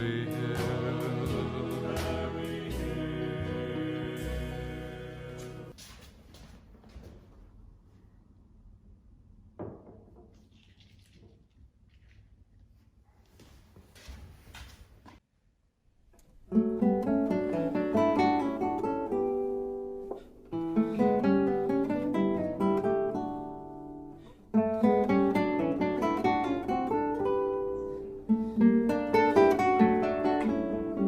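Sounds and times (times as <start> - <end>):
gentle acoustic guitar: 16.4 - 31.0.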